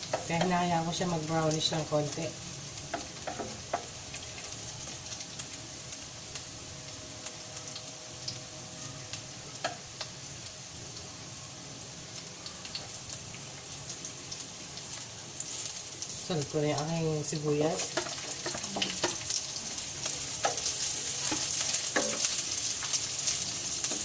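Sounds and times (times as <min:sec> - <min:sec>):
garlic sizzling in hot oil: 0:00.0 - 0:24.0.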